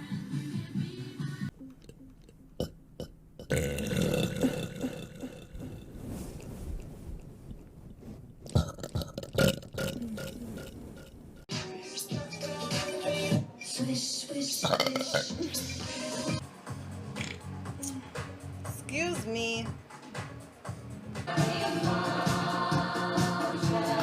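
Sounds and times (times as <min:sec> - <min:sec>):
woman burping: 0:01.8 - 0:05.9, 0:08.5 - 0:11.1, 0:14.6 - 0:15.7.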